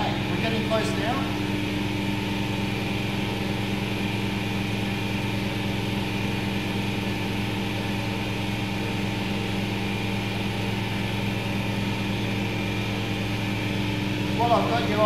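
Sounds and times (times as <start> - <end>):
washing machine motor hum: 0.0 - 15.0.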